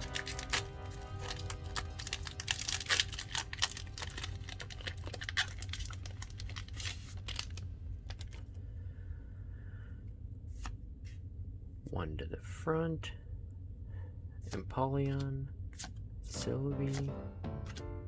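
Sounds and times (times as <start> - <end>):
foil wrapper crinkling and tearing: 0.0 - 8.5.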